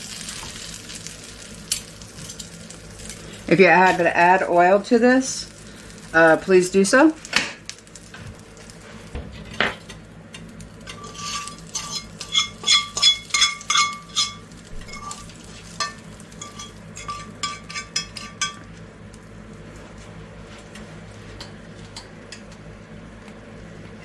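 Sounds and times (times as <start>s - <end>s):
faint frying sizzle: 0.0s - 24.0s
metal utensil scraping metal pot: 10.8s - 18.5s.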